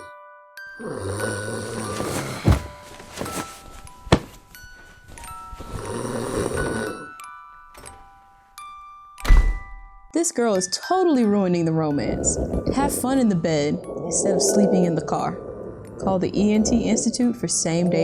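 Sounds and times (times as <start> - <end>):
light tinkling music: 0.0 - 12.3
person snoring: 0.8 - 2.7, 5.7 - 7.1, 12.0 - 18.0.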